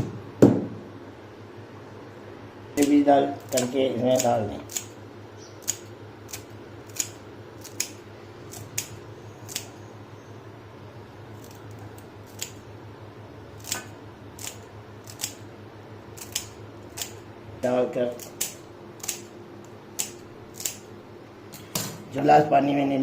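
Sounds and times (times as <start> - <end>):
steady low hum: 0.0 - 23.0
scissors snipping herbs: 2.8 - 5.0, 5.6 - 9.8, 11.4 - 12.6, 13.6 - 15.4, 16.2 - 17.2, 18.0 - 20.9.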